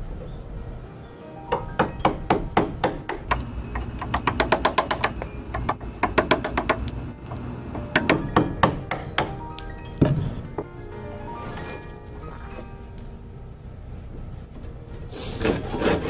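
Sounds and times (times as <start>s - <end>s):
hammer striking wood: 1.5s - 7.0s, 7.7s - 9.4s.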